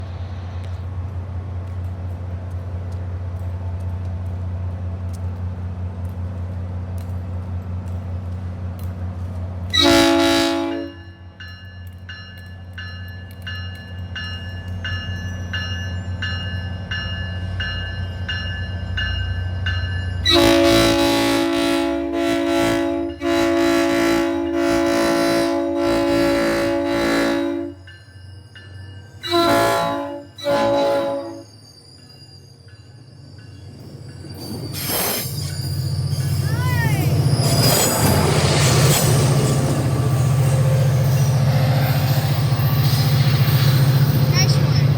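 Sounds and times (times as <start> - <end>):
train horn blast: 9.7 - 11.2, 20.2 - 27.8, 29.2 - 31.5
diesel locomotive idling: 35.3 - 44.9.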